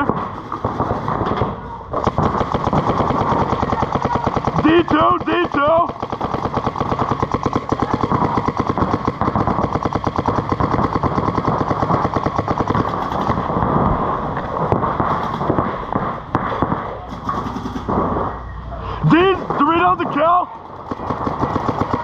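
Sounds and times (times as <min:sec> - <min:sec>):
paintball markers firing: 0:00.0 - 0:18.3, 0:19.2 - 0:22.0.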